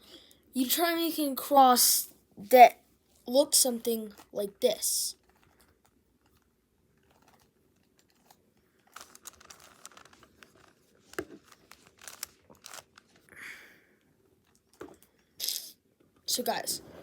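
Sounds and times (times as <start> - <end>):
puzzle cube clicking and rattling: 3.7 - 13.3.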